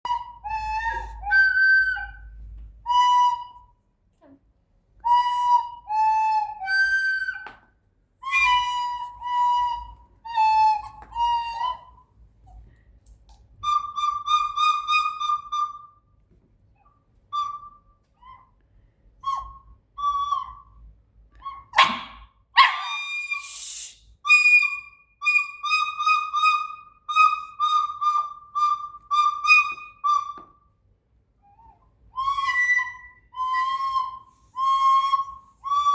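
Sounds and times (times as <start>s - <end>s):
short whistle-like notes: 22.8s - 26.0s.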